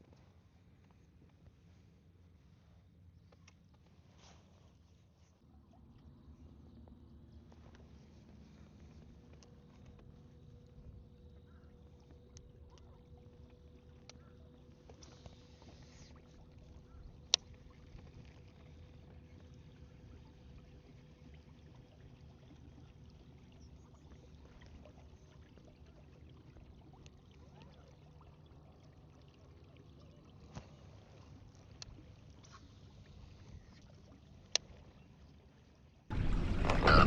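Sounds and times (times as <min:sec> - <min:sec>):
faint low hum: 0:00.0 - 0:37.0.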